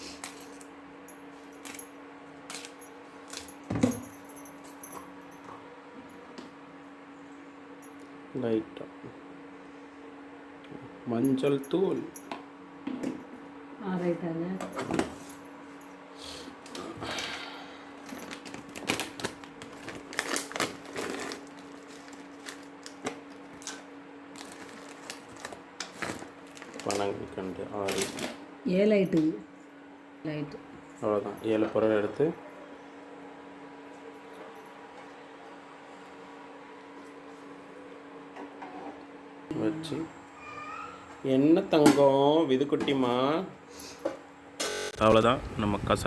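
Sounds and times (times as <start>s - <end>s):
faint steady hum: 0.0s - 46.0s
steady low hum: 43.2s - 46.0s.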